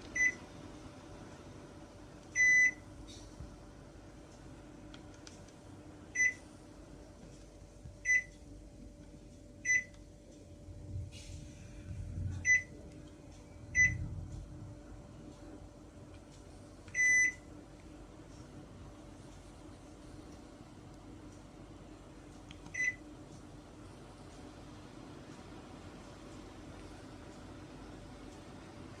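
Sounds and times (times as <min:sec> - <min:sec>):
air conditioner beeps: 0:00.0 - 0:29.0
low hum: 0:10.2 - 0:16.2.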